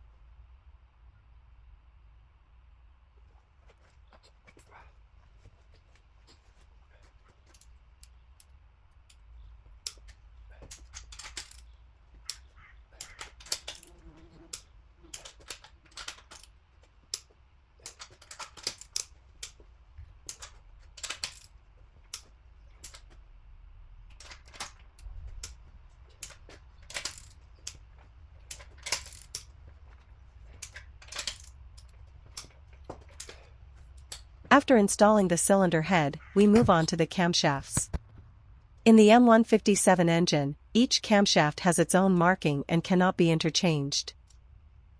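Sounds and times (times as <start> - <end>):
metallic clicks of hand tools: 9.8 - 16.5, 20.2 - 23.2
low steady hum: 14.6 - 44.9.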